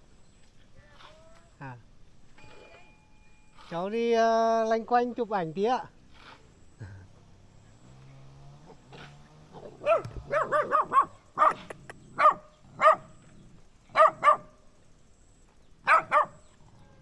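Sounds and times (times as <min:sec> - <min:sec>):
dog barking: 0:09.6 - 0:13.2, 0:13.9 - 0:14.6, 0:15.8 - 0:16.5.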